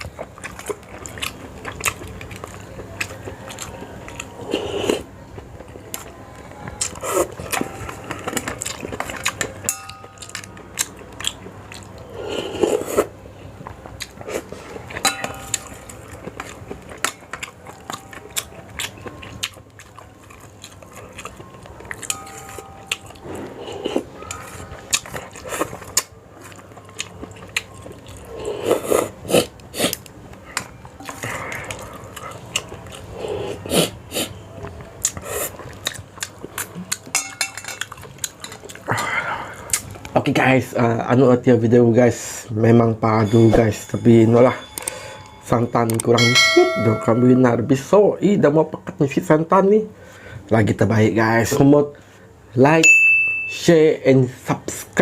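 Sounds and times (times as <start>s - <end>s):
chewing and biting food: 0.0s - 37.2s, 37.8s - 40.2s.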